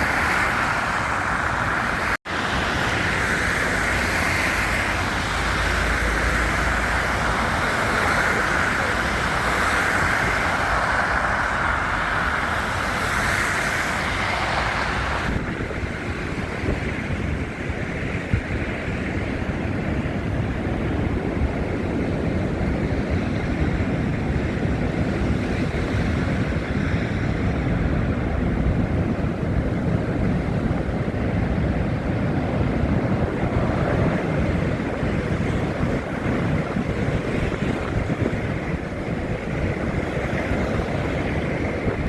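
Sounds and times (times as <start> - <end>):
wind buffeting microphone: 0.0 - 42.0.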